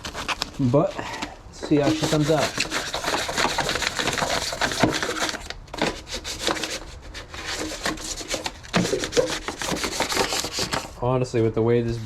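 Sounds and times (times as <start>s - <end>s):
sandpaper scuffing sheet metal: 1.7s - 11.0s.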